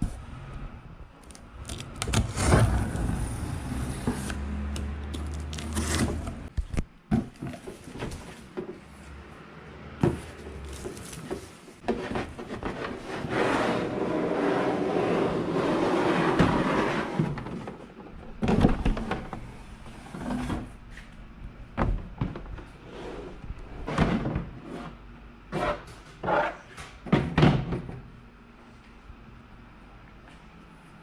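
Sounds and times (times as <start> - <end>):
knocks and scrapes: 10.0 - 17.9.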